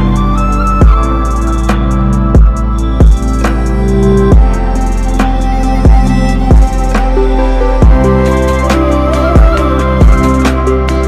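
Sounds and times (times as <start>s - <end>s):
sustained music chords: 0.0s - 11.0s
deep drum hits: 7.8s - 8.1s.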